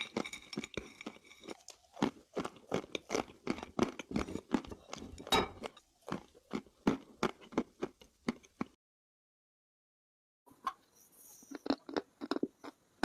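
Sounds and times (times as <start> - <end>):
chewing chalk crunches: 0.0 - 8.8, 11.5 - 12.8.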